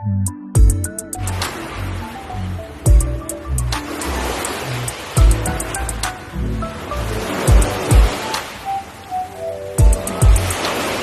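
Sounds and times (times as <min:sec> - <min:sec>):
held synth notes: 0:00.0 - 0:11.0
kick drum beats: 0:00.6 - 0:00.9, 0:02.9 - 0:03.2, 0:05.2 - 0:05.8, 0:07.5 - 0:08.2, 0:09.8 - 0:10.5.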